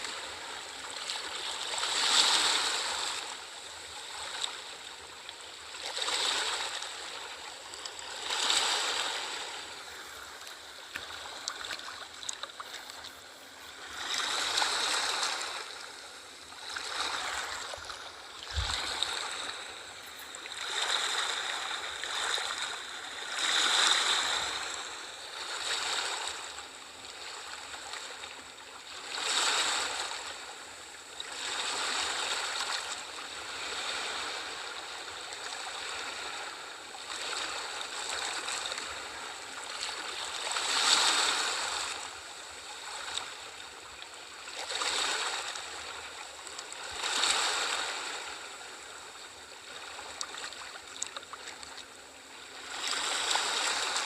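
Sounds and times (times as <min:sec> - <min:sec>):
sea waves washing in: 0:05.8 - 0:26.6, 0:52.3 - 0:54.0.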